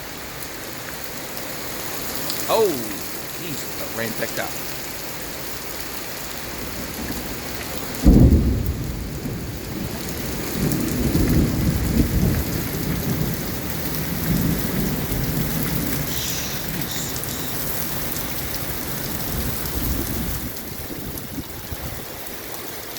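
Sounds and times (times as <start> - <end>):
heavy rain: 0.0 - 22.9
thunderclap and rumbling thunder: 6.5 - 22.1.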